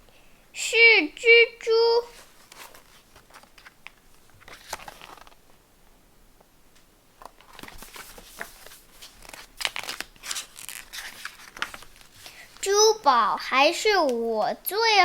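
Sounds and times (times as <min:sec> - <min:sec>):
paper rustling and clicking: 0:02.2 - 0:05.4, 0:07.2 - 0:12.4.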